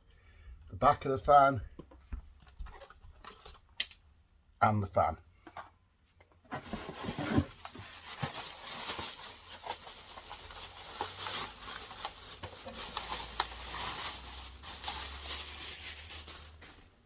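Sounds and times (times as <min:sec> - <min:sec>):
packaging rustling and crinkling: 0:06.5 - 0:17.0.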